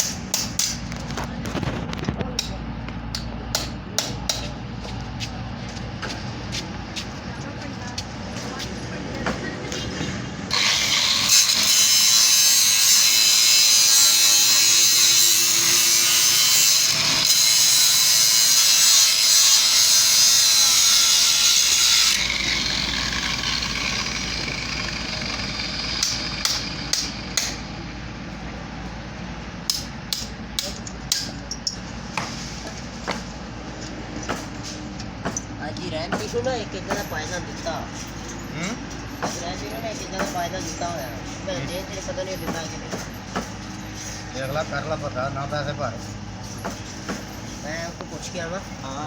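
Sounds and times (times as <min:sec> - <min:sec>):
angle grinder cutting: 0:10.5 - 0:27.8.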